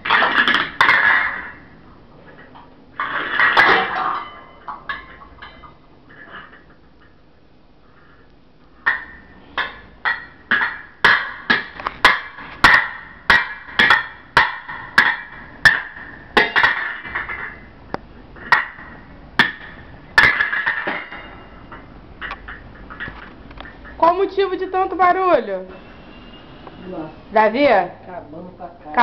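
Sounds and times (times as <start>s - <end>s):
pots and pans being banged: 0.0s - 1.7s, 3.0s - 5.8s, 8.9s - 17.7s, 18.4s - 23.2s.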